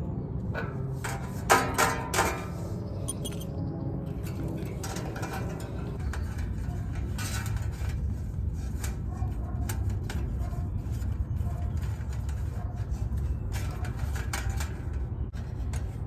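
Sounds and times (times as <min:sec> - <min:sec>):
hand tools clicking on metal: 0:03.1 - 0:03.5.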